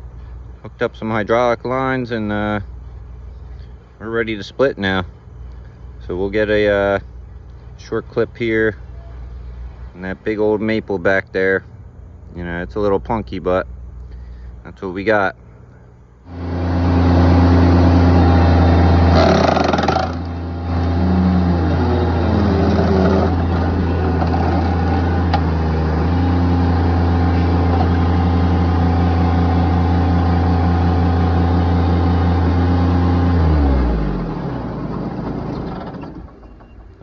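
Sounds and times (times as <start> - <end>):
engine running at high throttle: 16.2 - 36.4.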